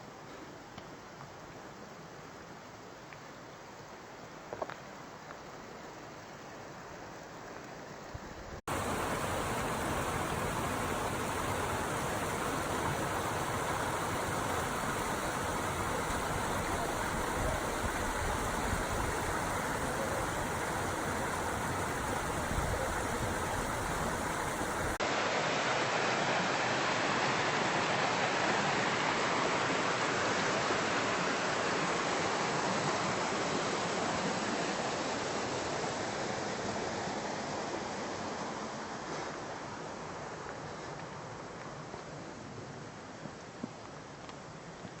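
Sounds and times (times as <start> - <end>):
river water rushing: 8.7 - 38.8.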